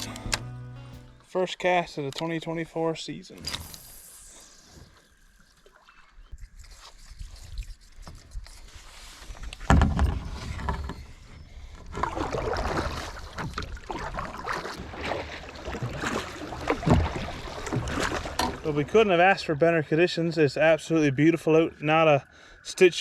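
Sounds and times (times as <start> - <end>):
kayak splashing on water: 11.8 - 19.3.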